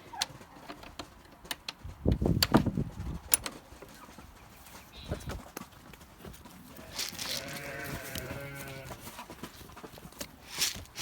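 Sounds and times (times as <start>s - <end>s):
sheep bleating: 6.7s - 9.0s
short rustling: 6.8s - 11.0s.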